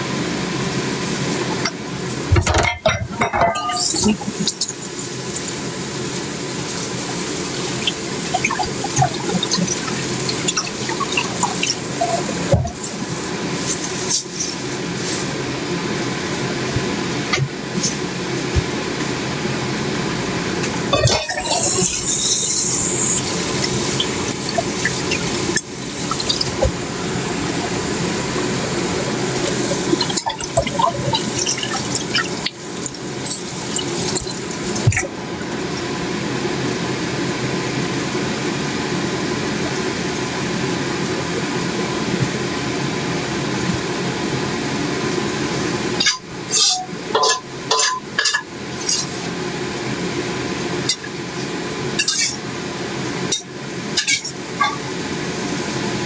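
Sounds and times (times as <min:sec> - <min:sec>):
tap water running: 0:01.0 - 0:36.6.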